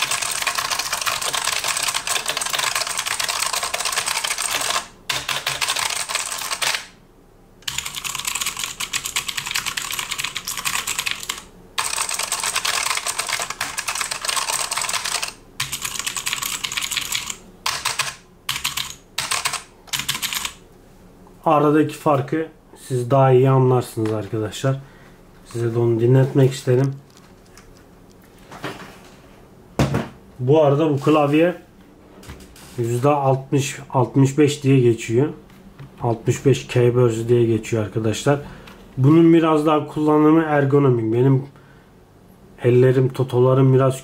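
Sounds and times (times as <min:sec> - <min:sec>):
fast typing on mechanical keyboard: 0:00.0 - 0:06.9, 0:07.6 - 0:20.6.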